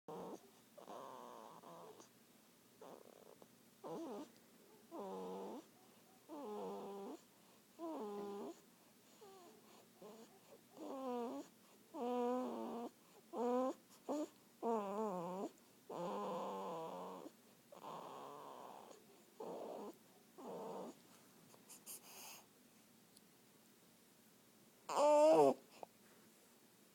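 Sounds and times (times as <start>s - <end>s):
person snoring with voiced note: 7.8s - 8.6s.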